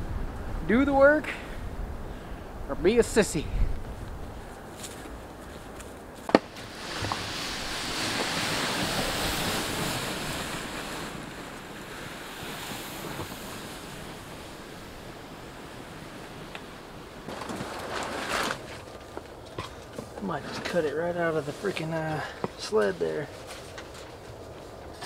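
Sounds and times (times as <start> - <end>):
wind gust on microphone: 0.0 - 5.4, 6.5 - 18.4.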